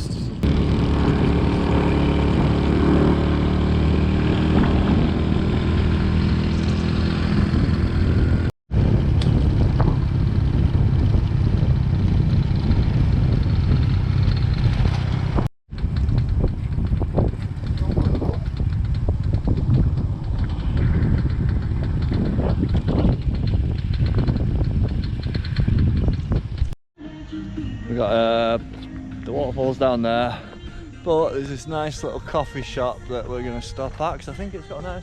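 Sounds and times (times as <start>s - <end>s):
motorbike engine running: 0.0s - 26.8s
wind rushing over microphone: 0.0s - 26.8s.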